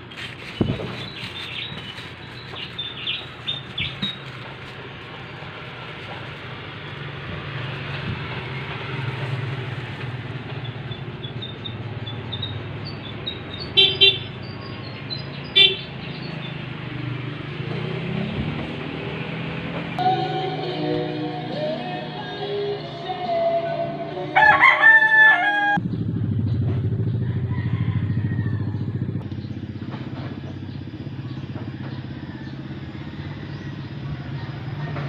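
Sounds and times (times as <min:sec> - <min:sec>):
traffic rumble: 0:00.0 - 0:35.0
vehicle horn toots: 0:13.8 - 0:14.4, 0:15.6 - 0:15.8.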